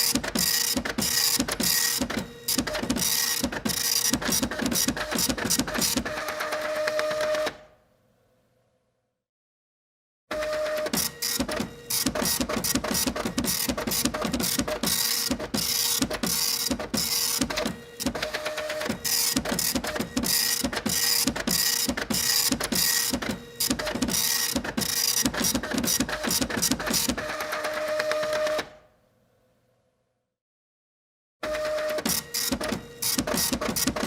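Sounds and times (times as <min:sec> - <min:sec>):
printer whine: 0:00.0 - 0:07.6, 0:10.3 - 0:28.8, 0:31.4 - 0:34.0
printer mechanical strokes: 0:10.3 - 0:28.6, 0:31.4 - 0:34.0.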